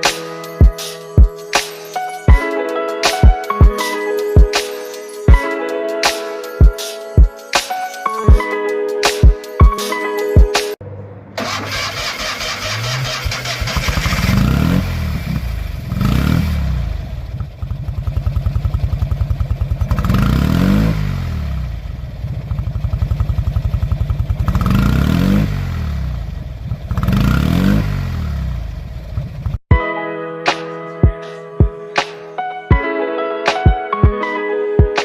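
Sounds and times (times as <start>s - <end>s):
car engine idling and revving: 10.8s - 29.6s.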